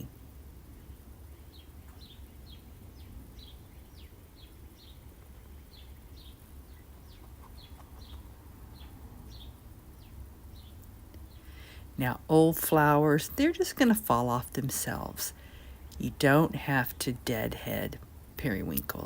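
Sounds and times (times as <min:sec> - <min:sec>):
low background rumble: 0:00.0 - 0:19.0
small bird chirping: 0:00.7 - 0:11.8.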